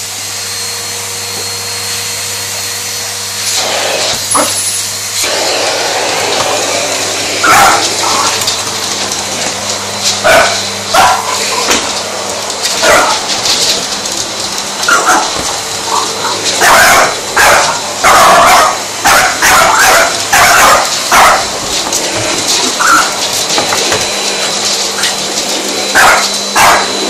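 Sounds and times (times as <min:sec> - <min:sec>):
vacuum cleaner humming: 0:00.0 - 0:27.0
puppy barking and yipping: 0:04.3 - 0:04.8, 0:07.4 - 0:08.4, 0:10.2 - 0:11.7, 0:12.8 - 0:13.2, 0:14.9 - 0:21.6, 0:22.8 - 0:23.2, 0:26.0 - 0:26.9.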